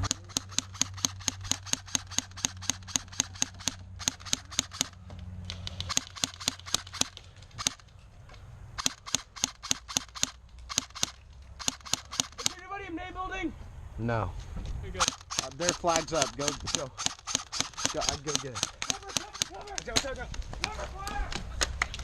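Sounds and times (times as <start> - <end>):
airsoft gun shots: 0.0 - 5.0, 5.8 - 7.8, 8.8 - 12.6, 15.0 - 19.6.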